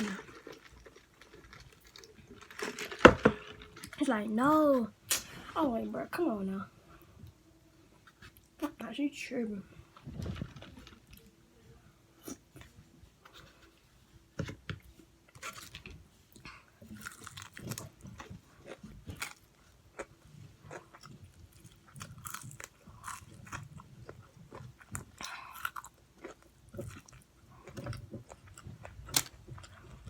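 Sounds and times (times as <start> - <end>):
chewing crunchy fried chicken: 0.0 - 3.0, 15.3 - 30.0.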